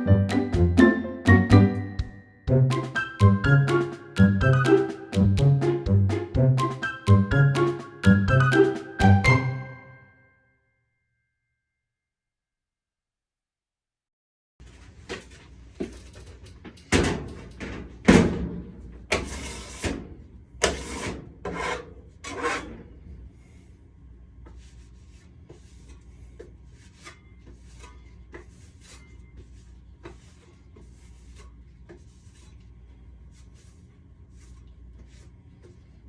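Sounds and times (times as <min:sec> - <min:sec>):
drywall knife scraping: 0:19.2 - 0:20.0, 0:20.6 - 0:22.9
small scrapes and taps: 0:24.4 - 0:32.7.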